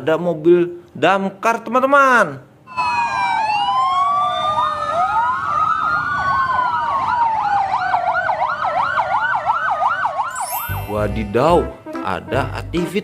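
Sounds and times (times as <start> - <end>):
wailing sirens: 2.7 - 11.0
fast warbling siren: 2.7 - 11.8.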